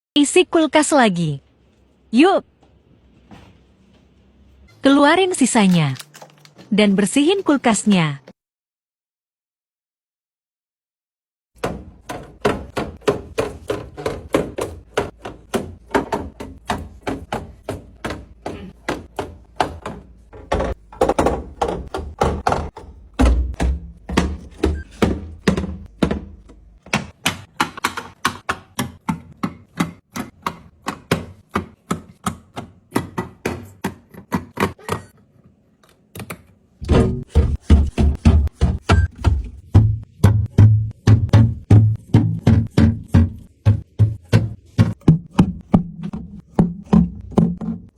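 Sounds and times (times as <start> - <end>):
percussive background music: 36.8 - 47.9.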